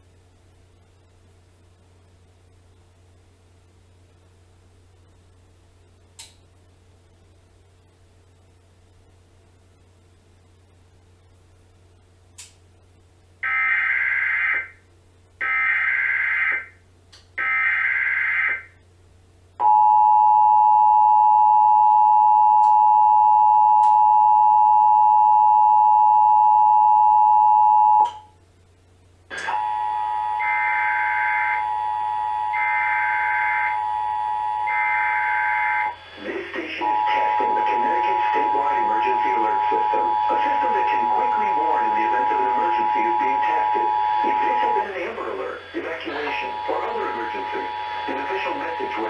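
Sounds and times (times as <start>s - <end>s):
digital data screech bursts: 34.8s - 49.0s
two-tone attention signal: 36.8s - 45.0s, 45.8s - 49.0s.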